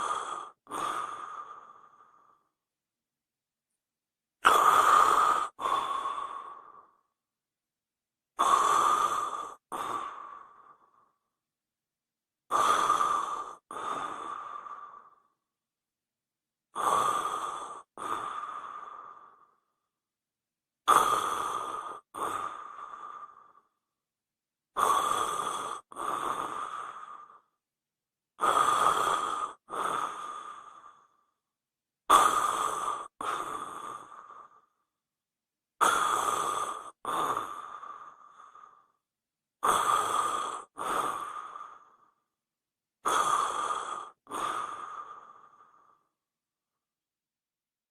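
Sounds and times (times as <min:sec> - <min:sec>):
person snoring: 0:00.0 - 0:02.4, 0:04.4 - 0:07.0, 0:08.4 - 0:11.0, 0:12.5 - 0:15.3, 0:16.7 - 0:19.6, 0:20.9 - 0:23.6, 0:24.8 - 0:27.4, 0:28.4 - 0:31.2, 0:32.1 - 0:34.7, 0:35.8 - 0:38.9, 0:39.6 - 0:42.2, 0:43.0 - 0:46.1.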